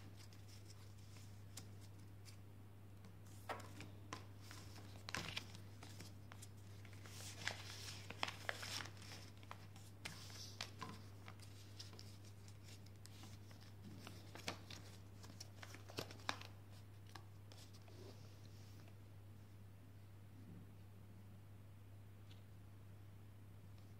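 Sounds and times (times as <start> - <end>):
paper crinkling and rustling: 0.0 - 2.4, 3.3 - 18.0.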